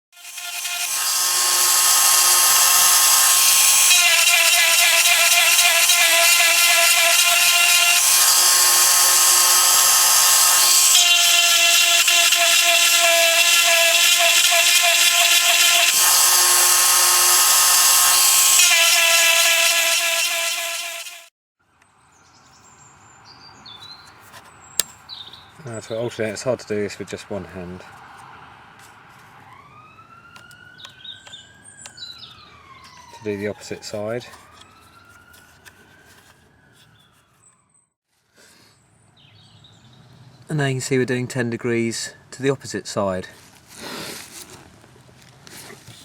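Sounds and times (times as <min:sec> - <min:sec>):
chain grinder whining and grinding: 0:00.1 - 0:21.3.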